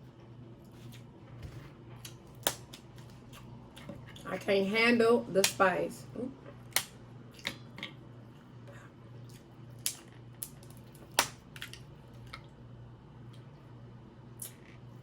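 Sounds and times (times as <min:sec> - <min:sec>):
steady low hum: 0:00.0 - 0:15.0
crab shells cracking: 0:02.1 - 0:03.0, 0:09.8 - 0:11.9.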